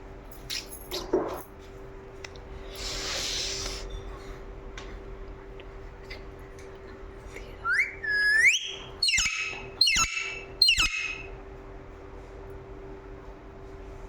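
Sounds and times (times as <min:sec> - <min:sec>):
parrot sharp calls: 0:07.6 - 0:11.3
parrot whistling rising notes: 0:07.6 - 0:11.3.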